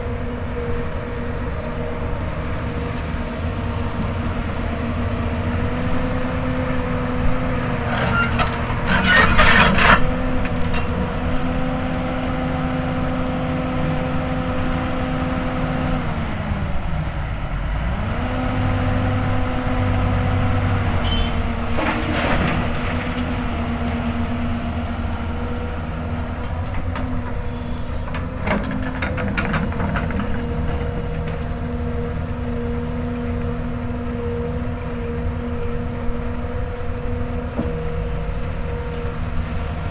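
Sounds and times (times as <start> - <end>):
excavator diesel engine under load: 0.0 - 39.9
bucket scraping and clanking: 7.8 - 11.4, 21.1 - 24.3, 26.5 - 31.6.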